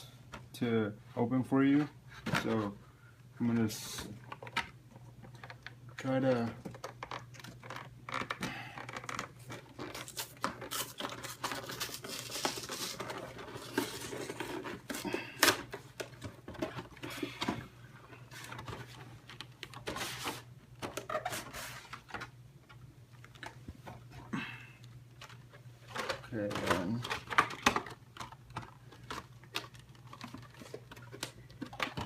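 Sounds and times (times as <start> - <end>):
packaging crinkling and tearing: 6.6 - 17.2, 25.1 - 32.0.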